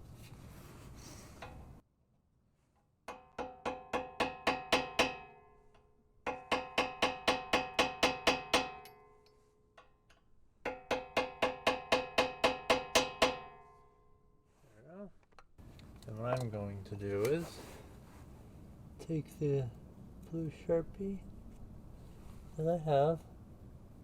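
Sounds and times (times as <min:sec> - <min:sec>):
hammer striking chisel: 0:03.1 - 0:05.4, 0:06.2 - 0:10.0, 0:10.6 - 0:13.6.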